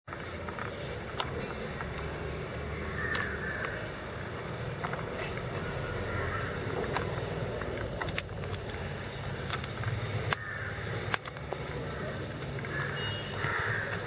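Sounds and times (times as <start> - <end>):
sharp clicks: 3.0 - 5.8, 6.4 - 14.0.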